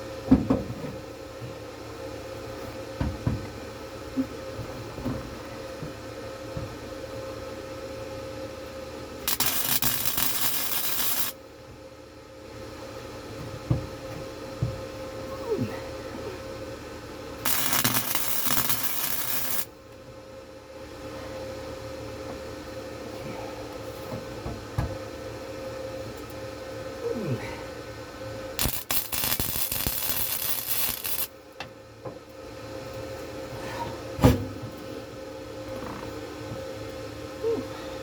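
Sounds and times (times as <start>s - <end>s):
steady hum: 9.0s - 11.6s, 15.0s - 20.8s, 25.6s - 31.6s
wire-feed welding: 9.2s - 11.4s, 17.4s - 19.7s, 28.6s - 31.3s.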